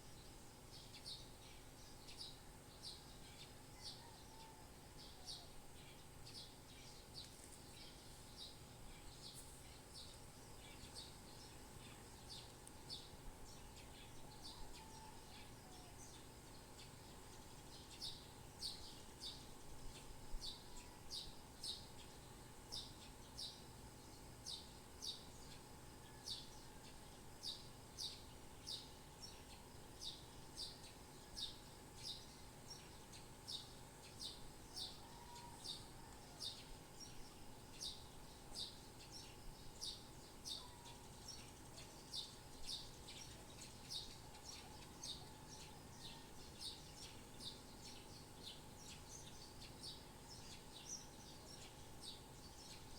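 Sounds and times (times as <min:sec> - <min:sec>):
bird chirping: 0:00.0 - 0:52.9
faint steady hum: 0:00.0 - 0:52.9.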